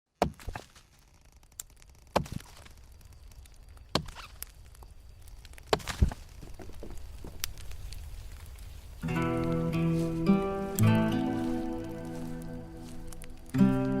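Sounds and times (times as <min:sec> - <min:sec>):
campfire wood snapping: 0:00.2 - 0:14.0.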